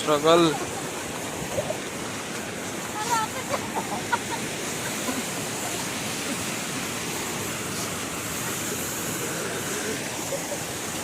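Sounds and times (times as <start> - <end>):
small waterfall rushing: 0.0 - 11.0.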